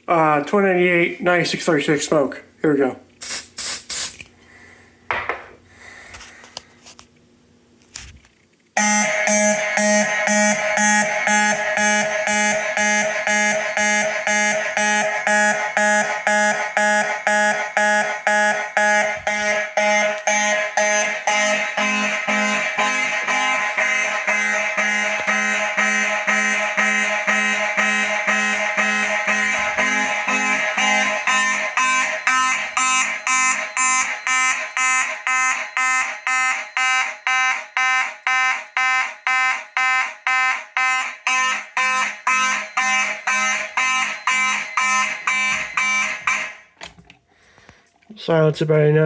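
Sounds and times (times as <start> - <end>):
pulsing fire alarm horns: 8.8 - 46.8.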